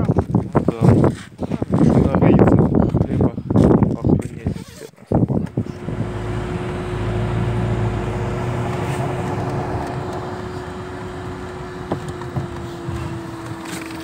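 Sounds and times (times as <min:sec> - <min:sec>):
vehicle engine whine: 0:05.3 - 0:14.0
low rumble: 0:05.4 - 0:12.6.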